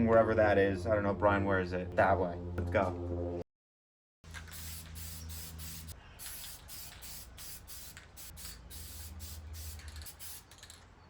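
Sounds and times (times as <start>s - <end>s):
low steady hum: 0.0s - 3.4s
spray paint can hissing: 4.3s - 10.8s.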